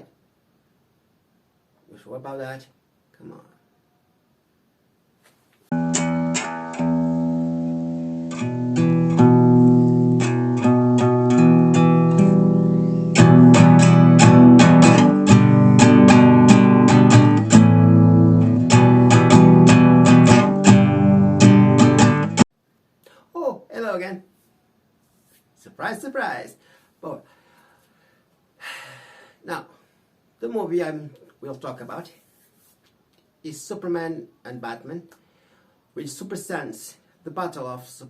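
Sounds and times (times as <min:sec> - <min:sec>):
guitar plucked quickly: 0:05.7 - 0:22.4.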